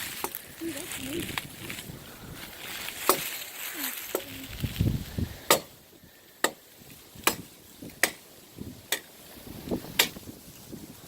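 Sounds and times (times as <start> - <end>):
blade striking wood: 3.0 - 3.3, 5.5 - 5.7, 7.2 - 8.2, 10.0 - 10.2.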